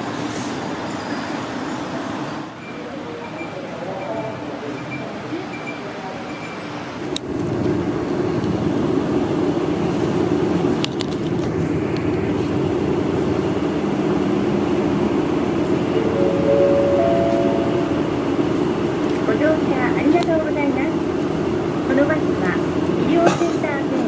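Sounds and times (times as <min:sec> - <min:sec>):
bus engine running: 0:04.6 - 0:24.0
rising whine: 0:15.9 - 0:19.0.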